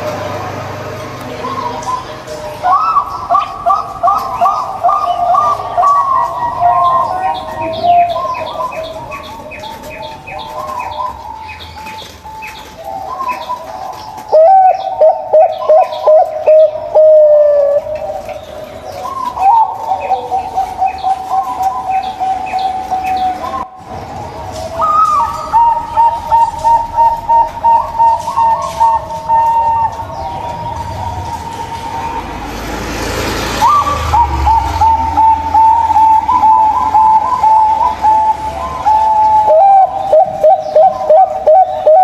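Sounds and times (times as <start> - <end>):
doves cooing: 0.0 - 42.0.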